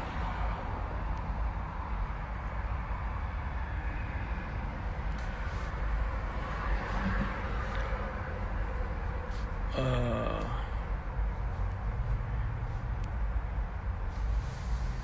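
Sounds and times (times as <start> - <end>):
broad hiss: 14.2 - 15.0.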